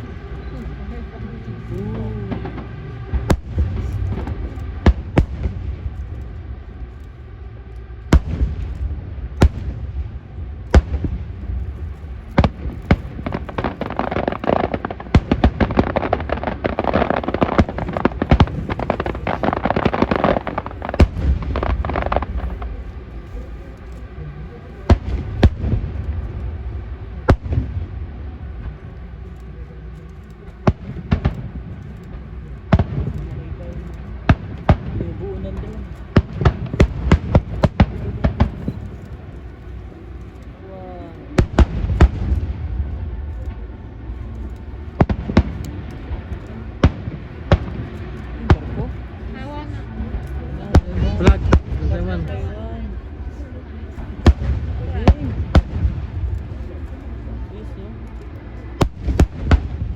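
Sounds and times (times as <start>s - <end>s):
fireworks crackling: 0.0s - 59.9s
low rumble: 0.0s - 59.9s
fireworks bangs: 8.1s - 22.8s, 32.7s - 39.3s, 58.8s - 59.9s.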